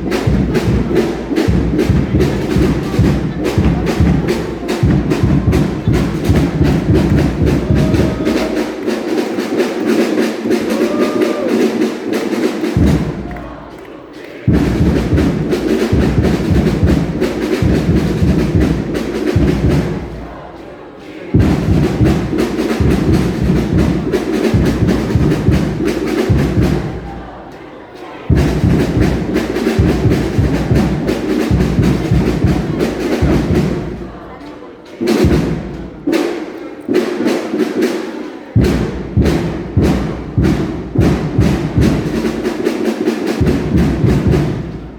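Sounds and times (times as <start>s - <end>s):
bass drum thuds: 0.0s - 8.6s
fast drumming: 0.0s - 34.4s, 35.0s - 37.8s, 38.5s - 44.9s.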